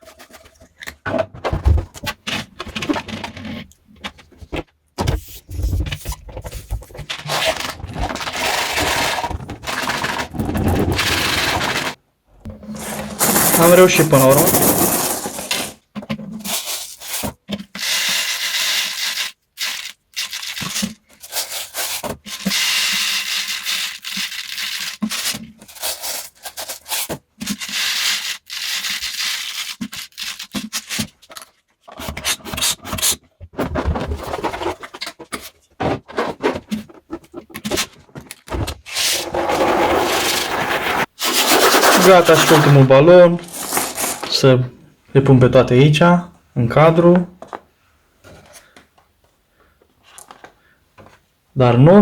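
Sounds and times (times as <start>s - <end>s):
hands rubbing latex balloon: 12.7s - 15.8s, 39.0s - 42.8s, 43.4s - 44.4s.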